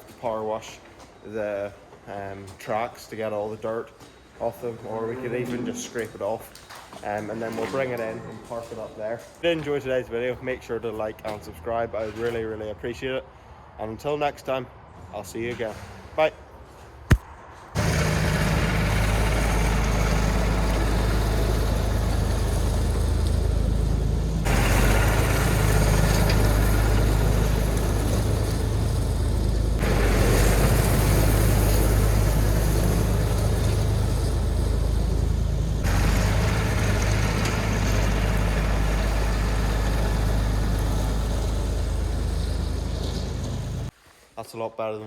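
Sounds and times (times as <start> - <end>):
pressure washer motor humming: 17.8 - 43.9.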